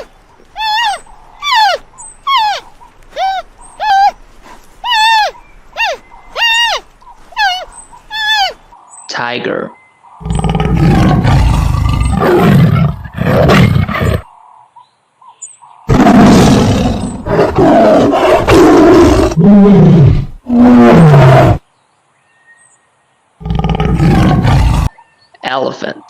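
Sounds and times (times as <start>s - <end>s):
tiger roaring and growling: 10.2s - 14.3s, 15.9s - 21.6s, 23.4s - 25.0s.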